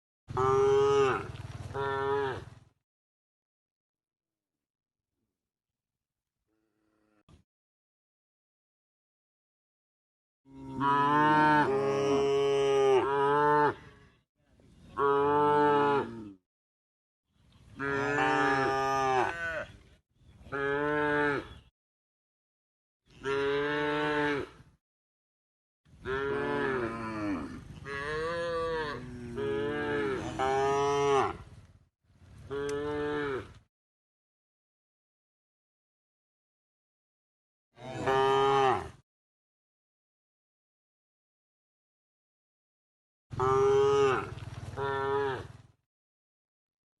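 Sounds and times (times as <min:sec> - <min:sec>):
cows mooing: 0:00.4 - 0:02.5, 0:10.5 - 0:13.9, 0:17.8 - 0:19.7, 0:20.5 - 0:21.6, 0:26.1 - 0:31.4, 0:32.5 - 0:33.6, 0:37.8 - 0:39.0, 0:43.4 - 0:45.6.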